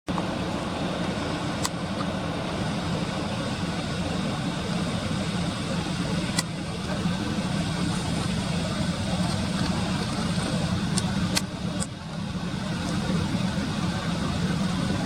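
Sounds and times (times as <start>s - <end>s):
low outdoor rumble: 0.1s - 15.0s.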